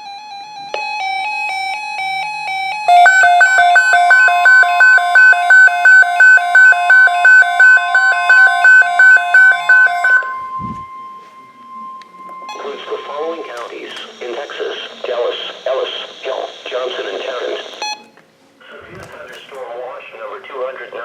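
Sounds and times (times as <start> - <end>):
electronic alert alarm: 0.8 - 14.6.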